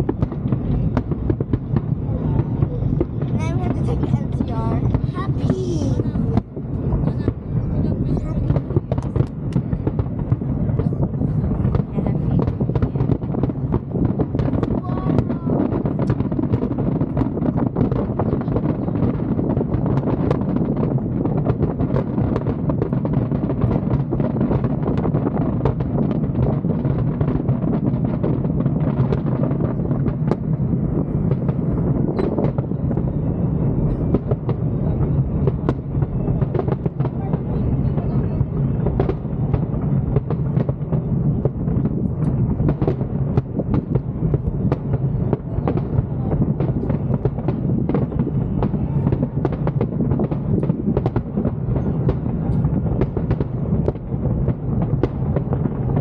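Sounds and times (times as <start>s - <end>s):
firework bangs and crackles: 0.0s - 56.0s
low rumble: 0.0s - 56.0s.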